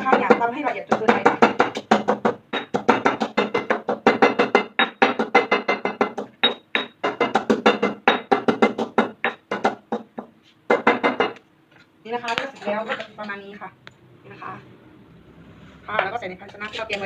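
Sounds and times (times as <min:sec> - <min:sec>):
pestle pounding in a mortar: 0:00.0 - 0:11.4.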